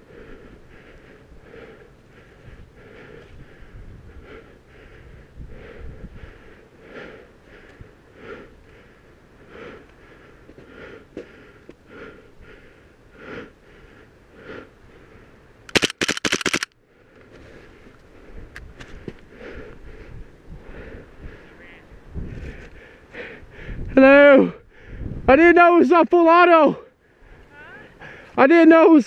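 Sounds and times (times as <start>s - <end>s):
gas pistol rapid burst: 15.7s - 16.7s.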